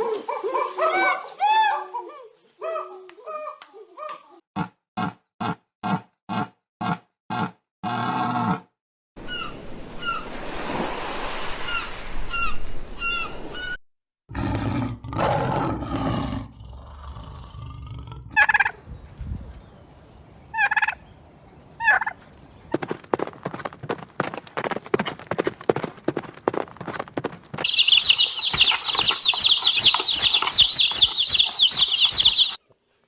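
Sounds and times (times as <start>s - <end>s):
harsh bird calls: 18.4s - 22.7s, 27.6s - 32.6s
bird chirps: 27.6s - 32.6s.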